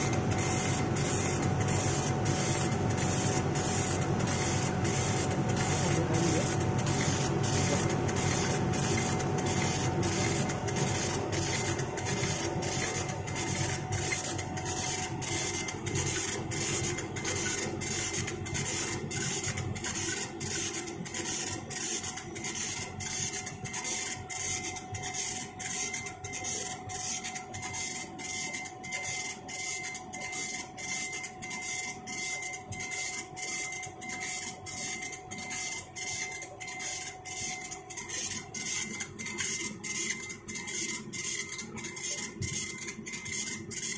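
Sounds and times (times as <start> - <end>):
machine pulsing hiss and whine: 0.0 - 29.3.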